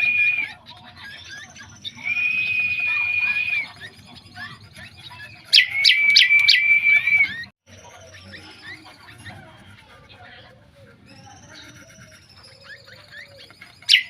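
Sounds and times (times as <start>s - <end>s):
bird whistling long notes: 0.0s - 0.5s, 1.9s - 3.8s, 5.6s - 7.5s
bird chirps: 0.0s - 9.8s, 10.4s - 14.0s.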